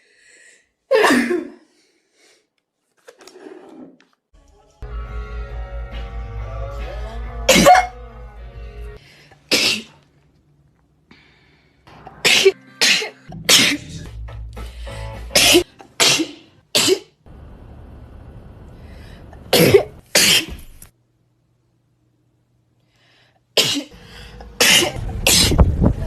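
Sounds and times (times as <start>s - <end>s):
pop song with steady beat: 4.8s - 9.0s
person sneezing: 9.5s - 10.0s, 12.2s - 14.1s, 15.4s - 17.2s, 19.5s - 20.7s.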